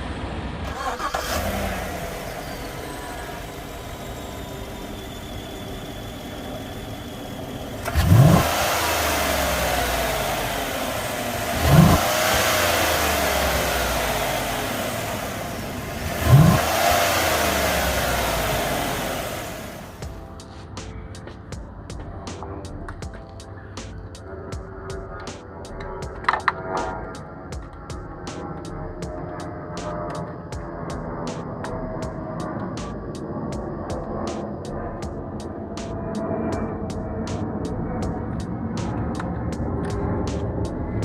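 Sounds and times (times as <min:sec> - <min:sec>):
truck engine idling and revving: 0:00.0 - 0:20.9, 0:23.8 - 0:41.0.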